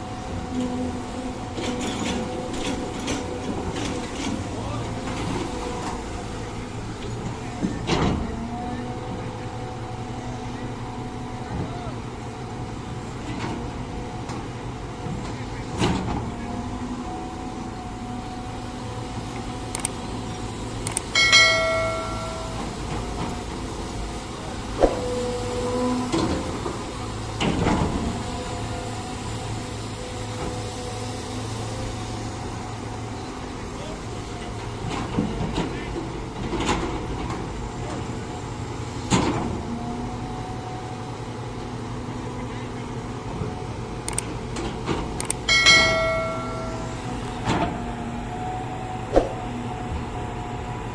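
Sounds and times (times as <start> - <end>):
excavator running: 0.0 - 50.9
heavy machinery diesel engine: 0.0 - 50.9
sharp click: 44.1 - 44.3.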